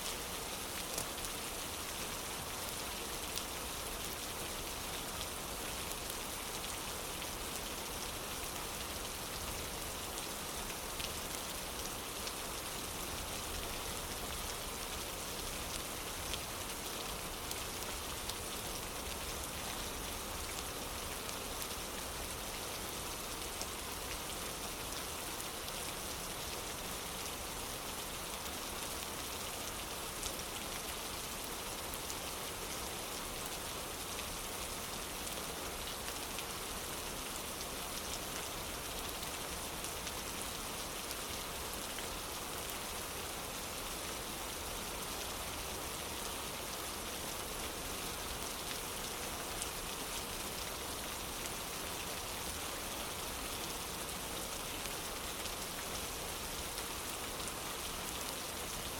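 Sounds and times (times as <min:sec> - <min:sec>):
steady rain hiss: 0:00.0 - 0:58.9.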